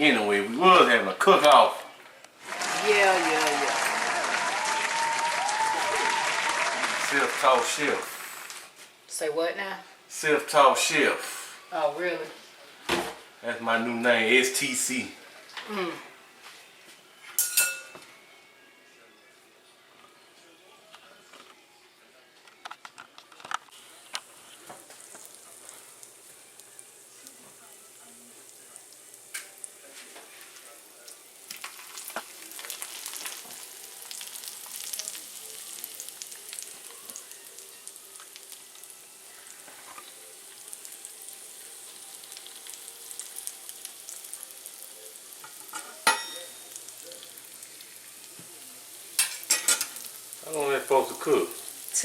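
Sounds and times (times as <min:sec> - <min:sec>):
potatoes sizzling in a skillet: 0:02.4 - 0:09.3, 0:10.1 - 0:12.3, 0:13.5 - 0:15.2, 0:23.7 - 0:52.0.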